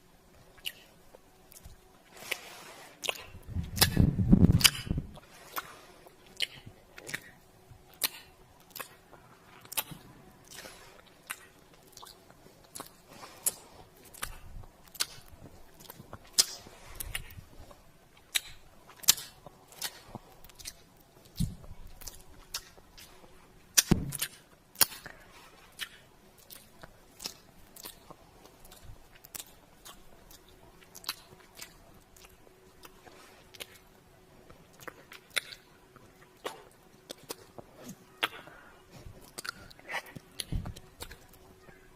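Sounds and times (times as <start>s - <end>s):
kissing and lip-smacking: 3.0s - 5.0s, 7.9s - 9.0s, 11.3s - 17.4s, 18.2s - 22.8s, 23.8s - 25.2s.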